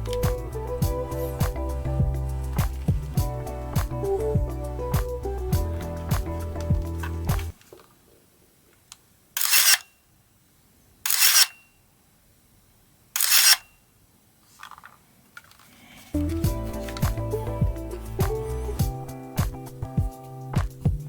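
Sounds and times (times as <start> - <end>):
camera shutter clack: 9.4 - 9.9, 11.1 - 11.6, 13.2 - 13.7.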